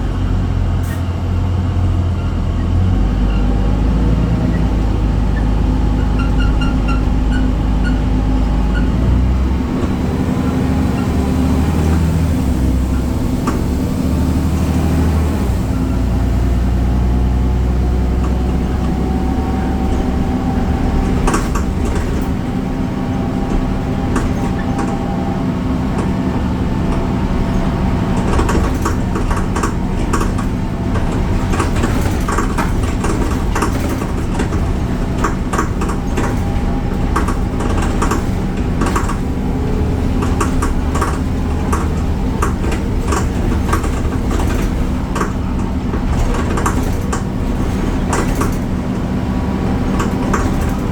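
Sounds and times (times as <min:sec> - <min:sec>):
bus engine humming: 0:00.0 - 0:50.9
heavy low rumble: 0:00.0 - 0:50.9
short rattles and clicks: 0:26.8 - 0:49.1, 0:49.7 - 0:50.9.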